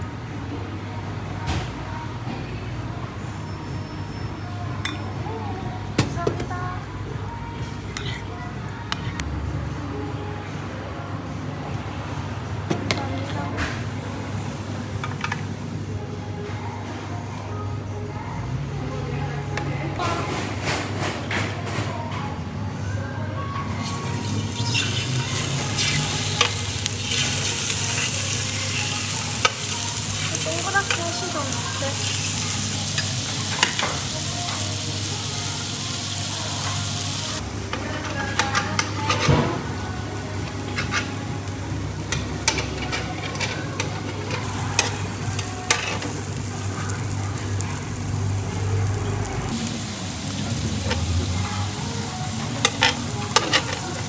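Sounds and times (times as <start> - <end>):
meat sizzling on a grill: 23.8 - 54.0.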